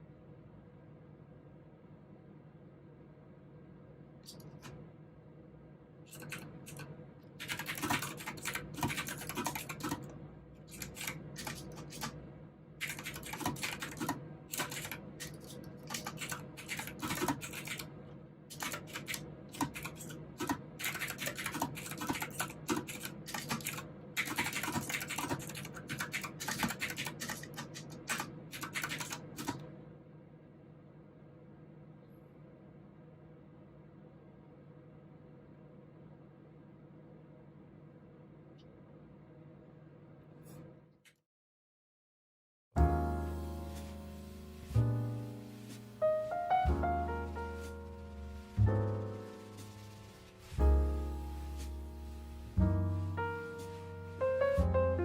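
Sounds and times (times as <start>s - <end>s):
mechanical keyboard typing: 6.1s - 10.1s, 10.7s - 12.2s, 12.8s - 17.9s, 18.5s - 29.6s.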